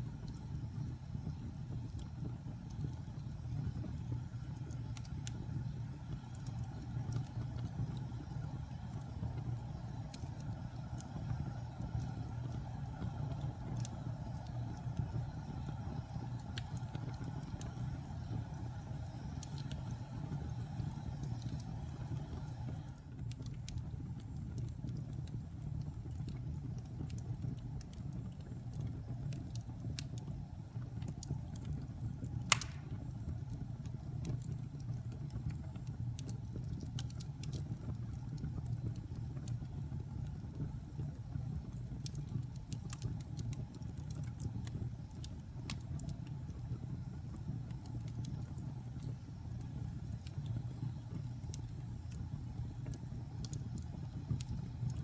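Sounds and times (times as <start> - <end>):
wood fire crackling: 0.0 - 55.0
loud fire pop: 32.5 - 33.1.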